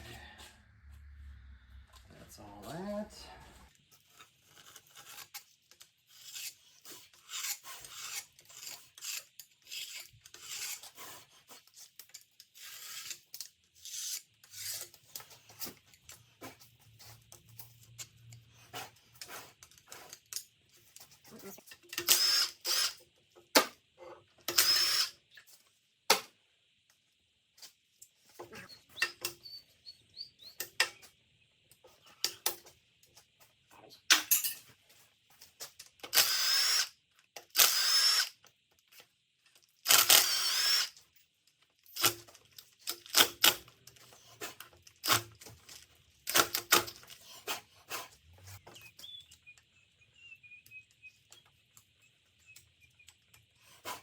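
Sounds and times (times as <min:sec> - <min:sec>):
scraping and rubbing on metal: 0:06.1 - 0:15.7.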